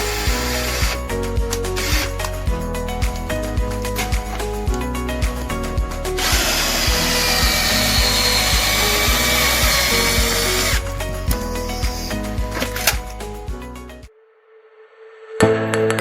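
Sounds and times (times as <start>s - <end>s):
background music with steady beat: 0.0s - 14.1s
electric drill whining: 6.2s - 10.8s.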